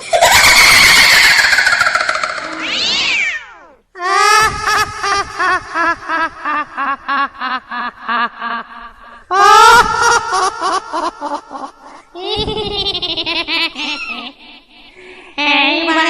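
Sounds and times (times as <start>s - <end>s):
eerie cackling laugh: 0.0s - 16.0s
loud long high cry: 0.1s - 5.0s.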